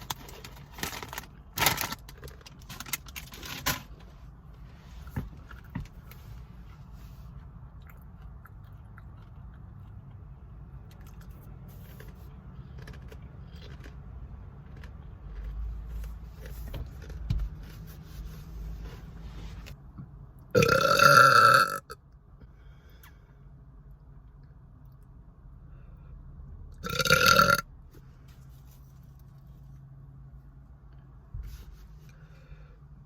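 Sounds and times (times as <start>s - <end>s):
soft chewing: 6.8s - 19.1s
woman burping loudly: 20.6s - 22.0s, 26.8s - 27.6s.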